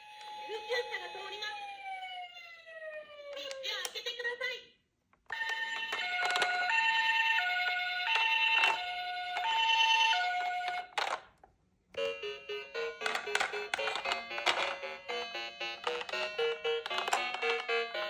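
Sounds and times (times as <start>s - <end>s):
toy two-tone siren: 0.0s - 3.6s, 5.3s - 11.0s, 12.0s - 18.0s
plastic clicks: 5.1s - 6.7s, 8.0s - 9.6s, 10.6s - 12.1s, 13.0s - 14.8s, 15.8s - 18.0s
electronic toy jingle: 12.0s - 18.0s.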